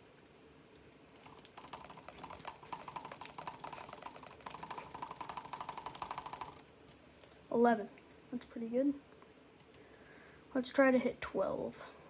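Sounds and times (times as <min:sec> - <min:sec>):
computer mouse clicking rapidly: 0:01.2 - 0:07.0.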